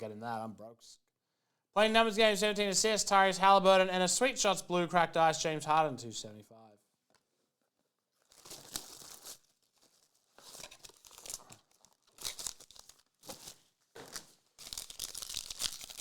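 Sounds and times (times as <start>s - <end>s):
plastic wrapper tearing and crinkling: 8.1s - 16.0s.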